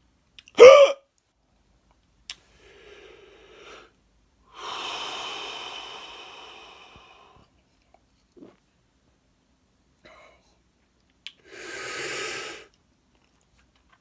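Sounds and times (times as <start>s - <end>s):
man hiccuping: 0.5s - 1.0s
man breathing noisily: 2.5s - 7.5s, 11.4s - 12.7s.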